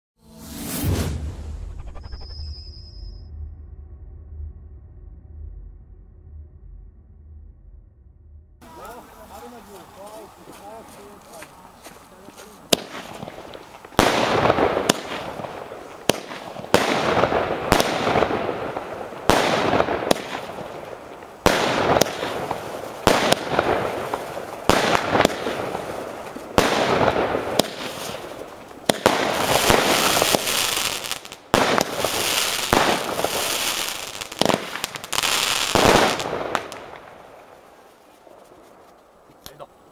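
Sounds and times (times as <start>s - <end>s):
firework crackle: 8.6s - 39.6s
firework shots banging: 12.3s - 37.4s.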